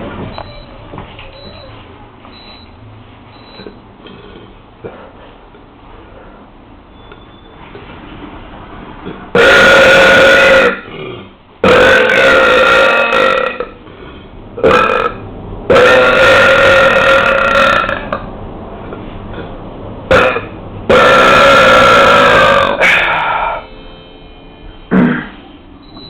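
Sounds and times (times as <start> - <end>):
person belching: 9.0 - 13.8, 14.6 - 18.2, 20.1 - 23.6, 24.9 - 25.4.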